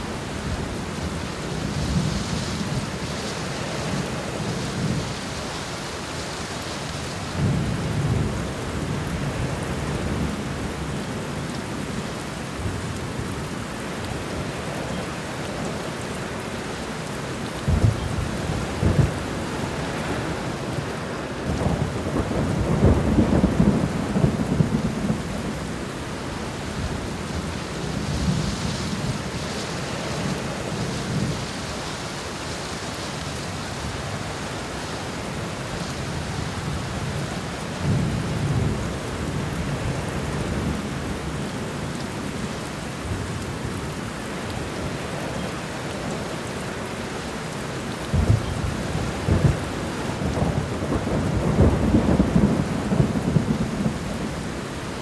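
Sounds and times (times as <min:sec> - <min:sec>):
rain hissing: 0:00.0 - 0:55.0
thunder rumbling: 0:17.7 - 0:31.6, 0:48.1 - 0:55.0.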